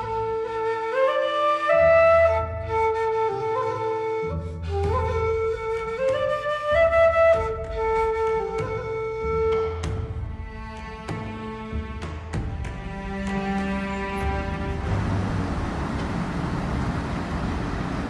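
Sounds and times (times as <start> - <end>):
flute melody: 0.0 - 10.8
low accompaniment: 0.0 - 18.0.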